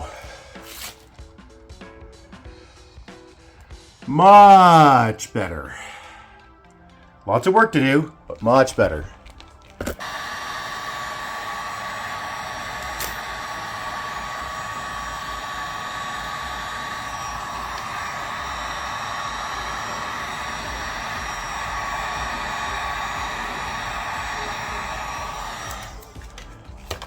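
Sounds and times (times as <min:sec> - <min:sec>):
electric blower whooshing: 0:00.0 - 0:01.3, 0:07.7 - 0:27.0
faint steady whine: 0:07.4 - 0:27.0.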